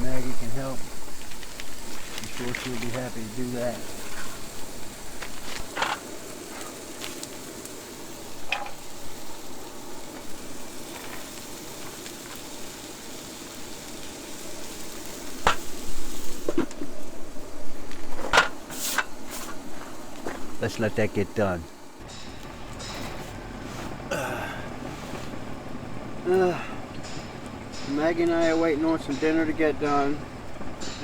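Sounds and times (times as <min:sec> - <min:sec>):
patties sizzling in a pan: 0:00.0 - 0:17.8.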